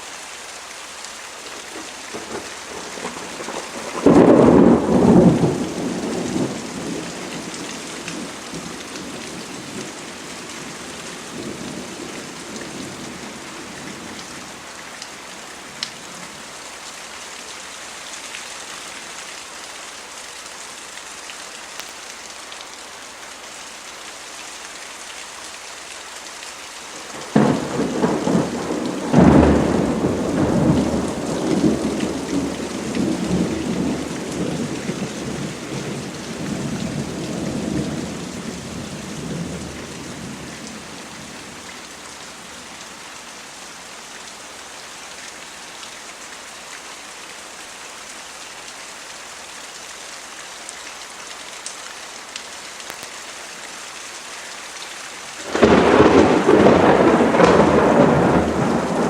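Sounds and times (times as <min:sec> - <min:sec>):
steady rain: 0:00.0 - 0:59.0
thunder rumbling: 0:02.1 - 0:14.1, 0:27.2 - 0:41.7, 0:55.4 - 0:59.0
loud thunder peal: 0:03.0 - 0:07.1, 0:55.4 - 0:59.0.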